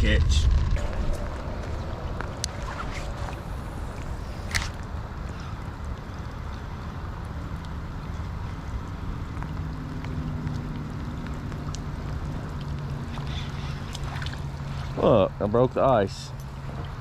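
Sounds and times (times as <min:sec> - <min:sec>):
wind buffeting microphone: 0:00.0 - 0:07.2
rain: 0:00.0 - 0:17.0.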